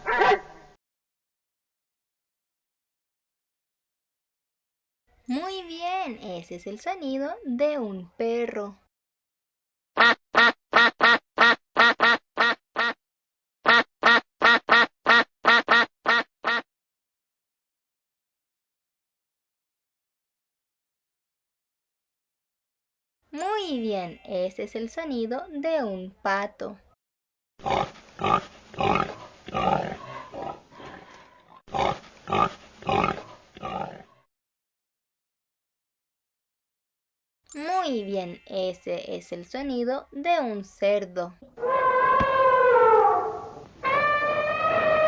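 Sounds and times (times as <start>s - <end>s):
duck quacking: 10.0s - 13.0s, 13.7s - 16.7s
pig grunting: 27.6s - 34.2s.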